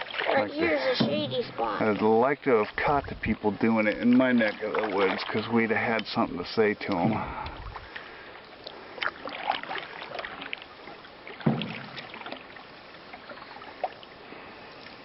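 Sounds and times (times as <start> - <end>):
paddle knock: 0.0 - 6.1, 11.3 - 12.4
water swishing and dripping: 0.0 - 15.0.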